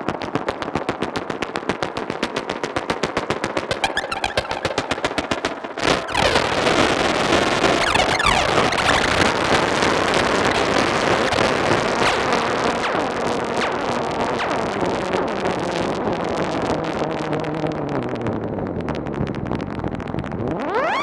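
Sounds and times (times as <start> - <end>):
synthesizer drone with pitch sweeps: 3.6 - 15.9, 20.5 - 21.0.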